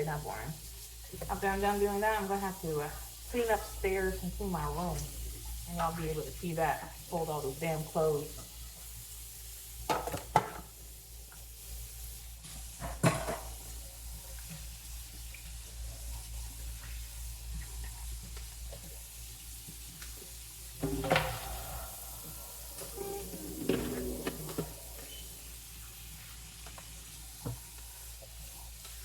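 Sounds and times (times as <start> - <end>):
running tap water: 0.0 - 29.0
dishes and utensils clattering: 12.9 - 13.6, 20.8 - 25.2.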